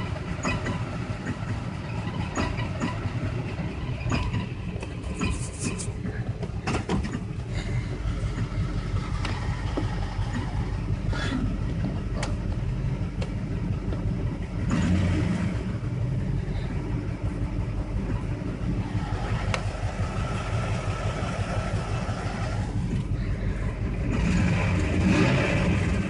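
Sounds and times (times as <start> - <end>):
car engine running rough: 0.0 - 26.0
sharp engine knocks: 6.3 - 11.0.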